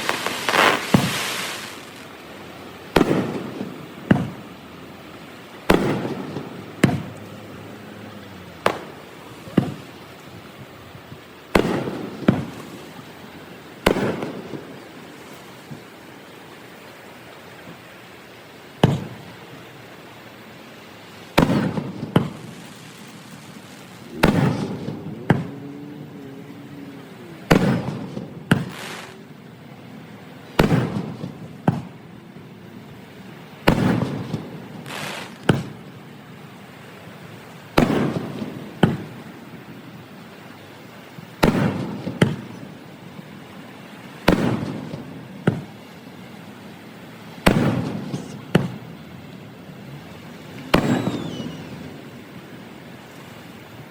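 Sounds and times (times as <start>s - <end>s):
fireworks bursting with echoing rumble: 0.0s - 7.7s, 8.6s - 16.2s, 18.8s - 19.3s, 21.2s - 25.7s, 27.1s - 29.7s, 30.4s - 32.4s, 33.4s - 36.2s, 37.7s - 40.2s, 41.2s - 46.1s, 47.3s - 49.8s, 50.6s - 52.3s.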